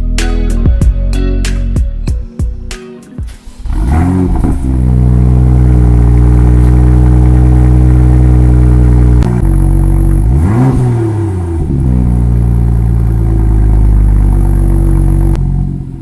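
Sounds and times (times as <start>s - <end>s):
engine rev blip: 3.3s - 12.7s
car engine idling: 3.3s - 16.0s.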